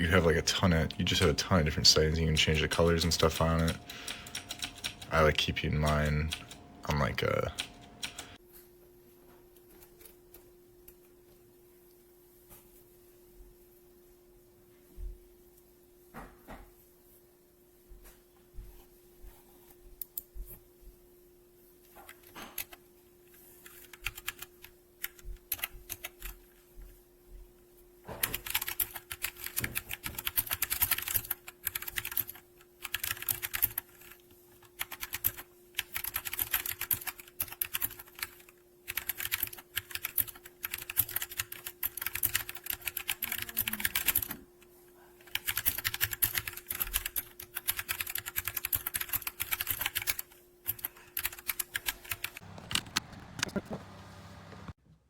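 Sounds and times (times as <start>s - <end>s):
mechanical keyboard typing: 1.0s - 8.4s, 22.1s - 22.8s, 23.6s - 26.4s, 28.2s - 44.4s, 45.2s - 53.6s.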